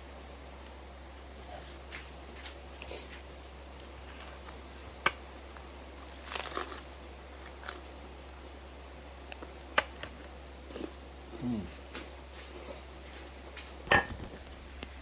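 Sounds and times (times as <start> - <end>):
low steady hum: 0.0 - 15.0
crinkling rustle: 1.5 - 7.9.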